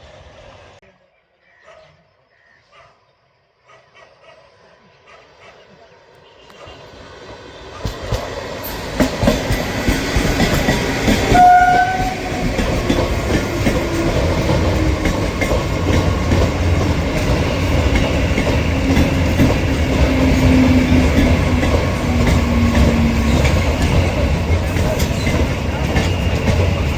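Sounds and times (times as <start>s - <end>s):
train wheels clattering on rails: 7.6s - 26.9s
train horn blast: 11.2s - 12.7s, 19.8s - 24.2s.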